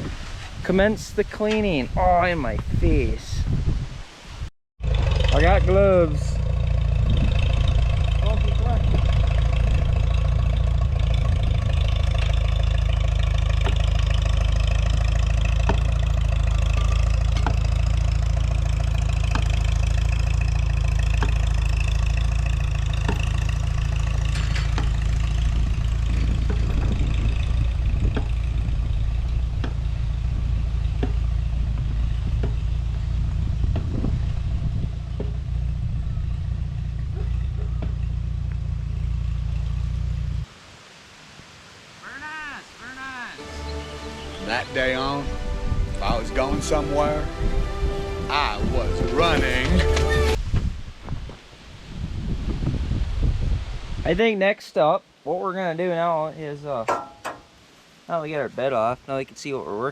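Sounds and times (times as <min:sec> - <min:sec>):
heavy low rumble: 0:00.0 - 0:04.0, 0:04.8 - 0:40.5, 0:43.4 - 0:54.2
engine running steadily: 0:04.8 - 0:40.5, 0:43.4 - 0:50.6.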